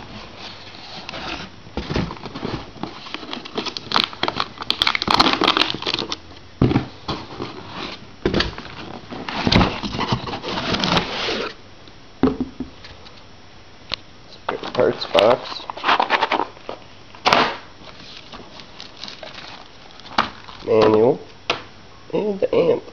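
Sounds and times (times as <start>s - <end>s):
cardboard packaging rustling: 0.0s - 11.6s, 14.5s - 16.8s, 17.8s - 21.0s.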